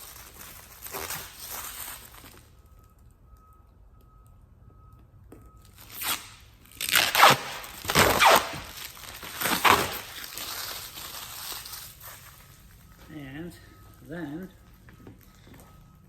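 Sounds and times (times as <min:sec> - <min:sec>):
plastic liner ripping: 0:00.0 - 0:02.5, 0:05.8 - 0:12.3.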